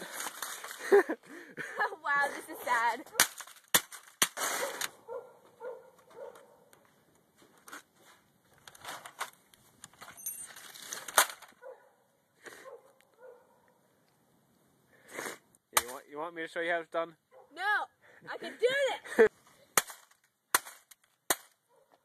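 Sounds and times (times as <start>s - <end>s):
sledgehammer breaking plastic: 3.2s - 4.9s.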